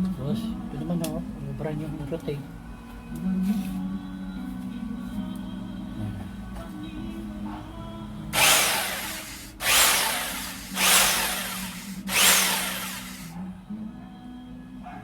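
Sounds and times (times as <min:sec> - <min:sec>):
rotary hammer drill bursts: 0:08.4 - 0:13.4.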